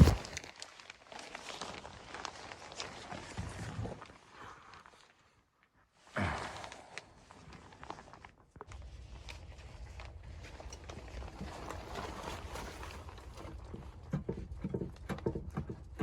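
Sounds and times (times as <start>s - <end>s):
heavy regular thumps: 0.0s - 0.4s, 13.2s - 16.0s
footsteps crunching through snow: 0.0s - 0.6s
low rumble: 8.7s - 14.2s.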